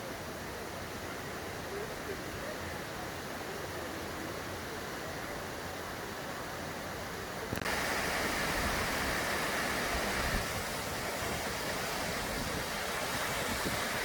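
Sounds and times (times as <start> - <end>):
river water rushing: 0.0 - 14.0.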